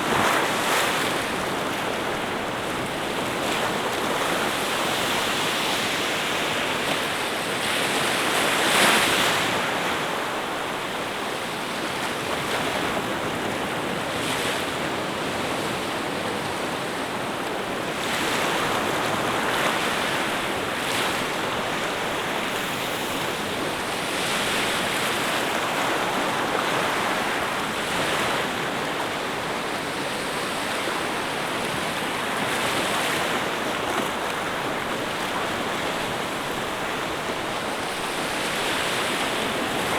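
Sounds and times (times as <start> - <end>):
sea waves breaking: 18.1 - 39.9.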